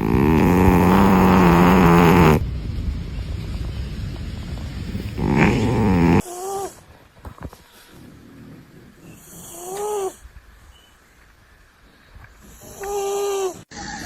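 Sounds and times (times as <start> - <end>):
cat snoring: 0.0 - 2.4, 5.1 - 6.7, 8.0 - 10.2
whistling snore notes: 0.0 - 2.4.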